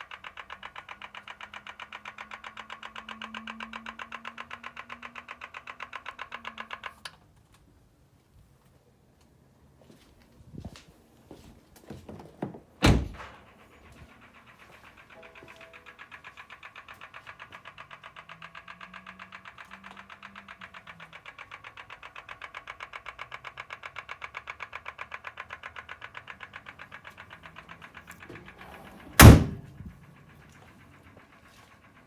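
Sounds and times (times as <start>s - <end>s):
rapid even ticking: 0.0s - 7.2s, 13.4s - 32.0s
loud thud: 28.6s - 29.8s.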